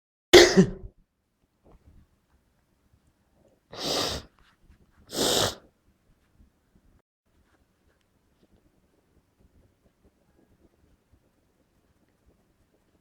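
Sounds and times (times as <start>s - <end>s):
person sneezing: 0.4s - 0.9s, 3.8s - 4.3s, 5.1s - 5.6s.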